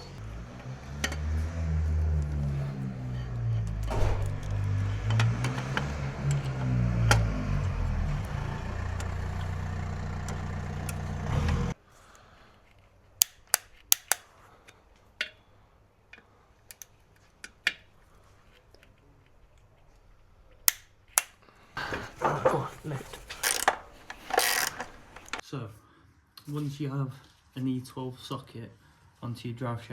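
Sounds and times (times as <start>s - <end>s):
machine running with low hum: 3.8s - 11.8s
metallic clicks of tools handled: 13.2s - 15.4s, 20.6s - 21.4s, 23.2s - 25.4s.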